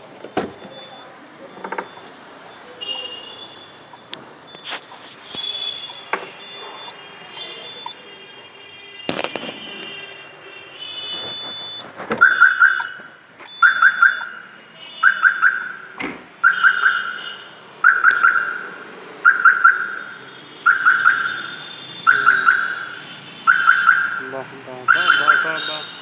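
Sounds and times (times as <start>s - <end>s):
alarm siren tones and chirps: 10.9s - 26.0s.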